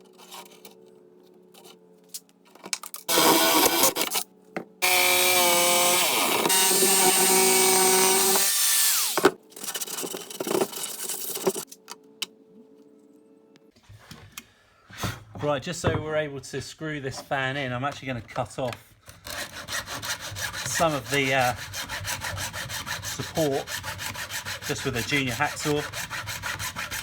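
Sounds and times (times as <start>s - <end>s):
power tool cutting wood: 3.1s - 4.2s, 4.8s - 9.4s.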